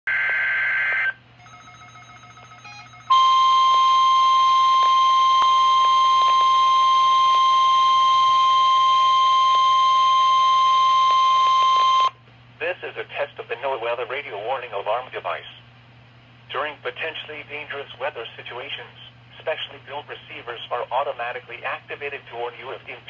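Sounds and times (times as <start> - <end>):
loud steady alarm tone: 0.1 - 12.2
faint radio noise: 12.6 - 15.6, 16.5 - 23.0.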